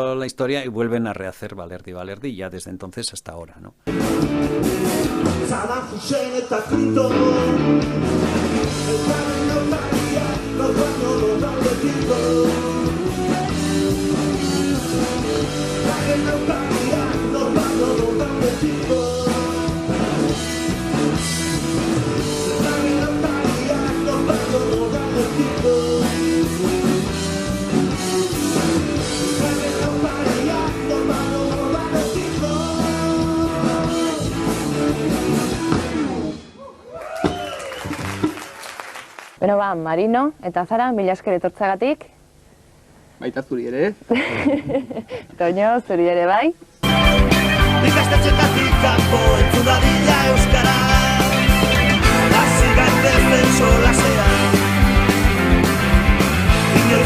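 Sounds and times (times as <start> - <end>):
pop-rock band music: 3.9 - 36.6, 46.8 - 57.0.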